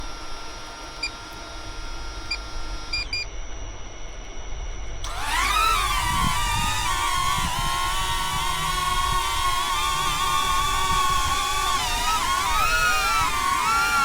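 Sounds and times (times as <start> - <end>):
drone propeller motors buzzing: 5.0 - 14.0.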